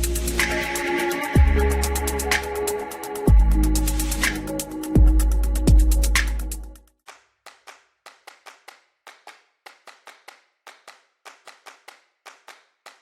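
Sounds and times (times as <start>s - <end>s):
electronic music: 0.0s - 6.8s.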